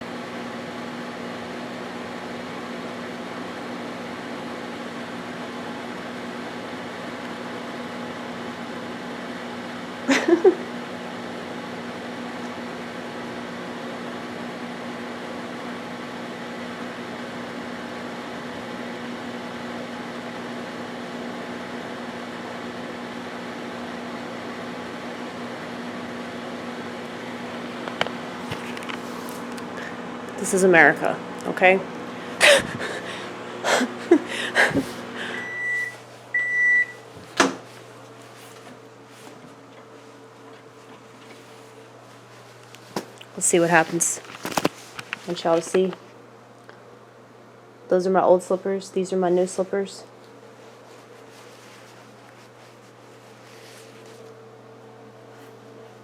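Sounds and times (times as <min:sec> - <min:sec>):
microwave oven humming: 0:00.0 - 0:56.0.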